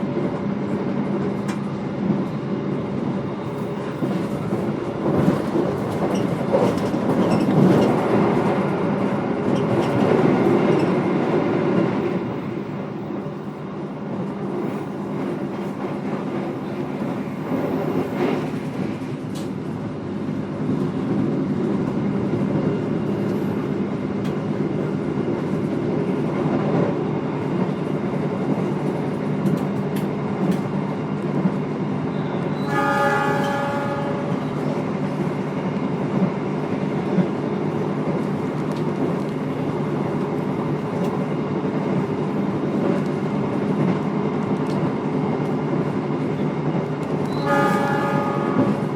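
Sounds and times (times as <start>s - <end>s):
train wheels rumbling on rails: 0.0s - 48.9s
train horn: 32.6s - 34.7s, 47.2s - 48.9s.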